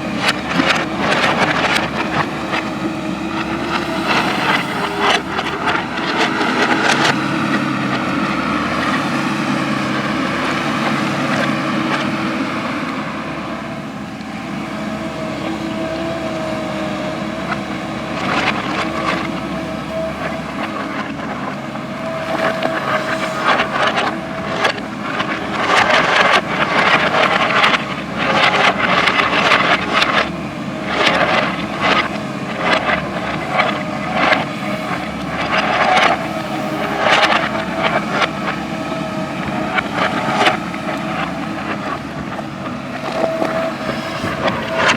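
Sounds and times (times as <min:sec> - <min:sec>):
diesel engine whining: 0:00.0 - 0:44.9
bucket knocking and scraping: 0:14.8 - 0:44.9.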